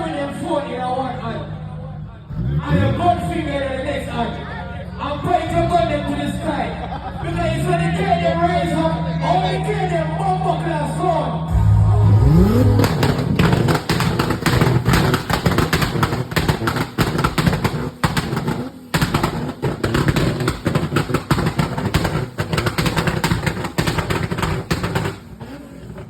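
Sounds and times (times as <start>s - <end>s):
low steady bass: 11.4s - 15.0s
rapid gunfire through speakers: 12.8s - 25.3s.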